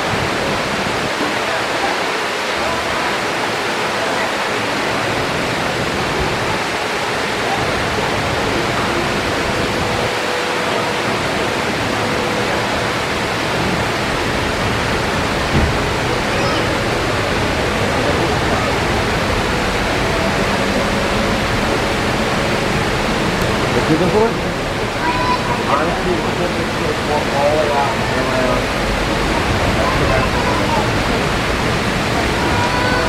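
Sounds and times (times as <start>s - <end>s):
waterfall rushing: 0.0s - 33.0s
knock: 15.5s - 15.8s.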